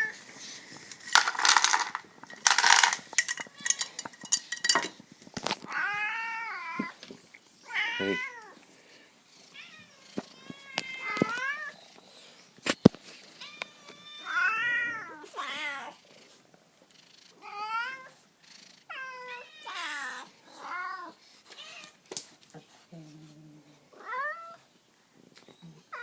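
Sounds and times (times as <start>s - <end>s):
cats meowing: 2.6s - 4.0s, 5.6s - 7.0s, 7.6s - 8.7s, 9.4s - 11.8s, 13.2s - 16.0s, 18.9s - 22.0s, 23.9s - 24.7s, 25.4s - 26.0s.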